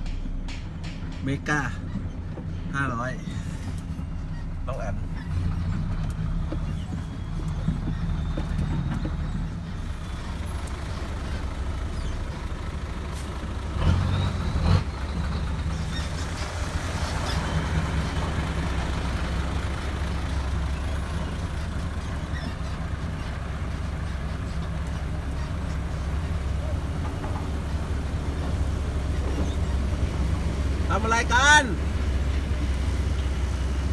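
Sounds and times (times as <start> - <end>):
diesel truck engine running: 0.0 - 33.9.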